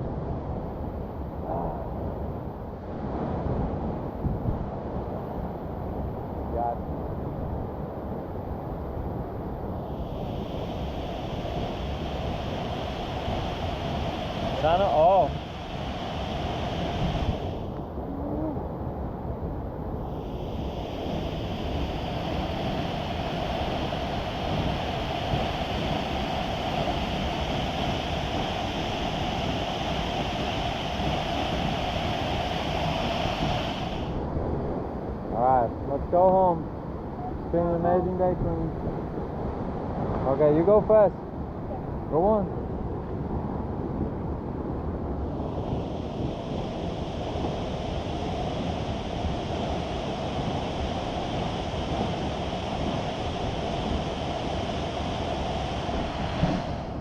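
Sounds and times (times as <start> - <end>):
waterfall rushing: 10.2 - 17.8, 20.2 - 34.2.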